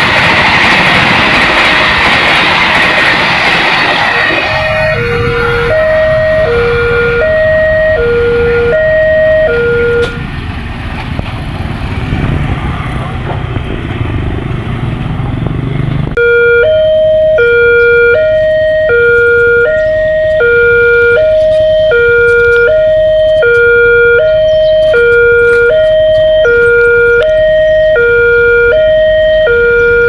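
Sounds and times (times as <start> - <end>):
rumbling noise: 0.0 - 16.2
two-tone warning siren: 1.6 - 10.3, 16.2 - 30.0.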